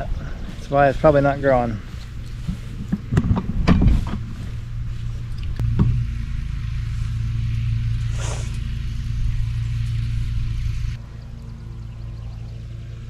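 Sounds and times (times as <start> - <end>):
knocks and clatters: 2.2 - 4.6, 5.4 - 6.2
small engine running: 4.4 - 13.0.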